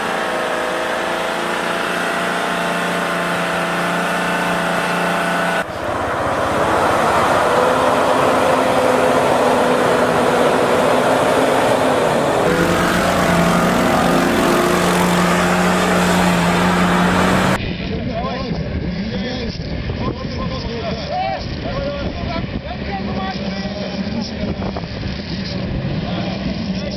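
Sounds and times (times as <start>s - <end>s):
off-road engines running: 0.0s - 17.9s, 20.7s - 26.9s.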